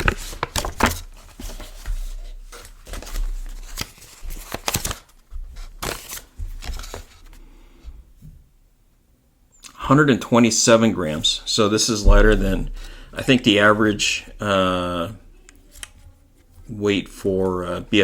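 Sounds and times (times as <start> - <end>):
packaging rustling: 0.0 - 7.3.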